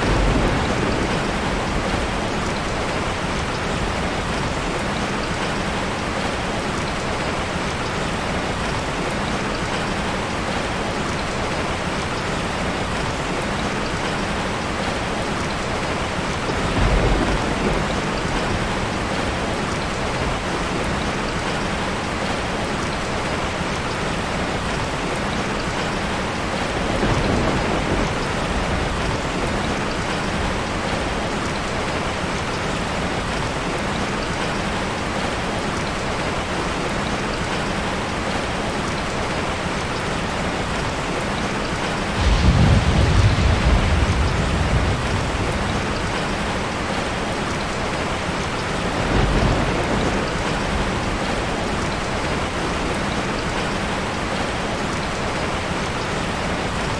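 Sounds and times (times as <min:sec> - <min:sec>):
thunder rumbling: 0:00.0 - 0:05.8, 0:15.1 - 0:21.6, 0:26.6 - 0:31.1, 0:42.0 - 0:53.6
heavy rain falling: 0:00.0 - 0:56.9.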